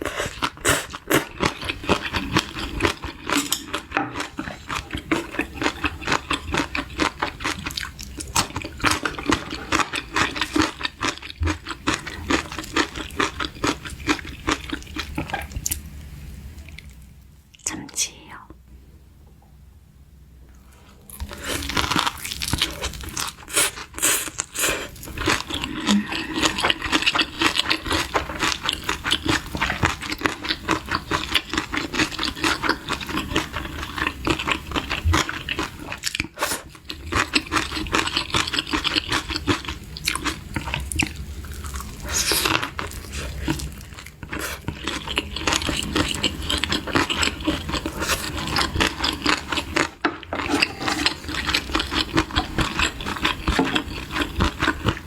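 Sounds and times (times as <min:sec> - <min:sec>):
person crunching and chewing food: 0:00.0 - 0:15.8, 0:21.0 - 0:55.0.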